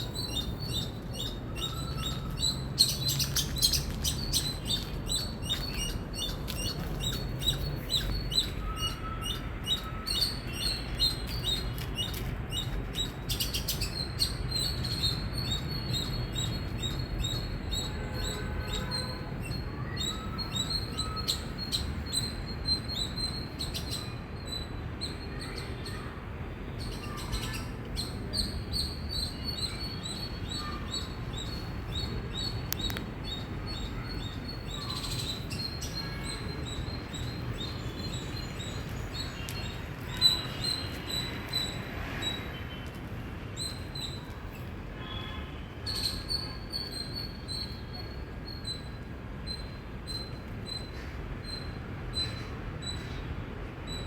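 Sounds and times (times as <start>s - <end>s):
squirrel chirping: 0.0s - 24.7s, 26.9s - 41.8s.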